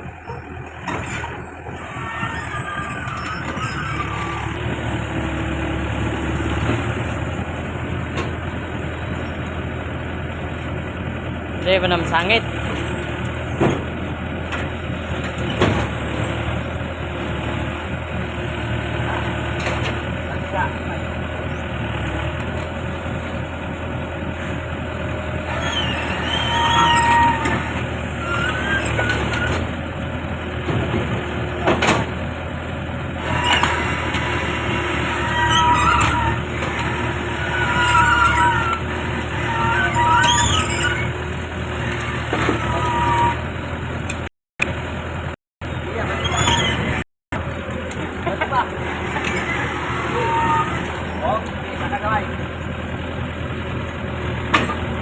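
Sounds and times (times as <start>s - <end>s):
diesel engine running: 0.0s - 55.0s
metallic squeals: 0.3s - 7.7s, 25.4s - 29.7s, 33.2s - 43.6s, 45.7s - 47.0s, 48.8s - 51.4s.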